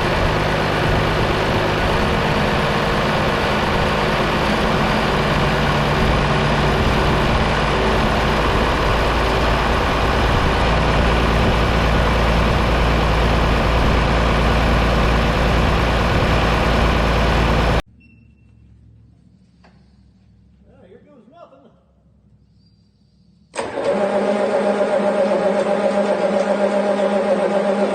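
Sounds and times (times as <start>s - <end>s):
tractor diesel engine running: 0.0s - 17.9s, 23.6s - 27.9s.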